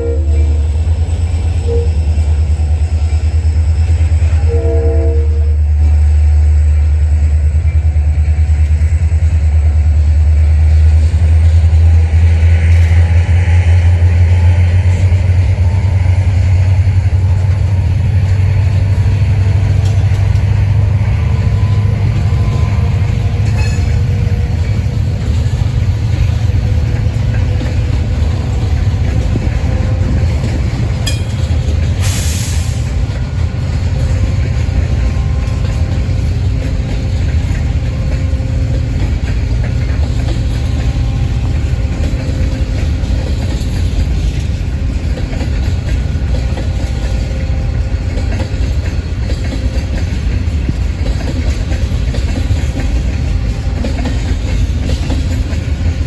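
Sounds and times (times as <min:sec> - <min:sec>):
freight train rumbling on track: 0:00.0 - 0:56.0.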